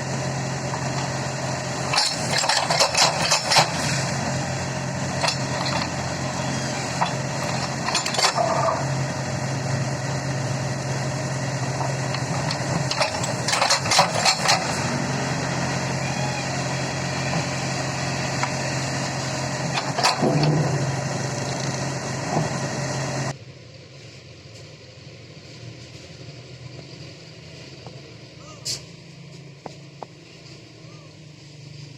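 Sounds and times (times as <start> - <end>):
diesel engine running: 0.0 - 31.9
sharp knocks of machine working: 1.9 - 4.1, 11.8 - 14.8, 19.7 - 20.8.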